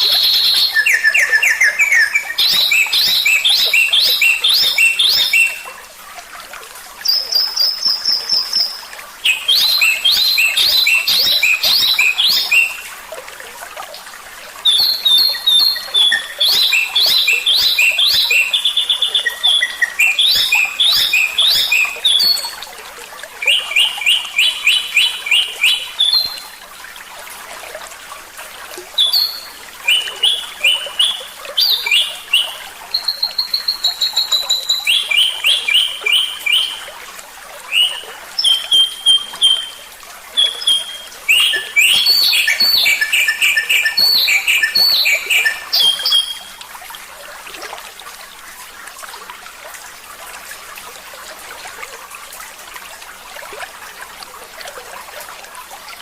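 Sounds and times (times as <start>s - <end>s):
songbird trilling: 0.0s - 5.6s, 7.3s - 12.8s, 14.7s - 22.6s, 23.5s - 26.4s, 29.0s - 36.8s, 37.7s - 39.8s, 40.4s - 46.5s.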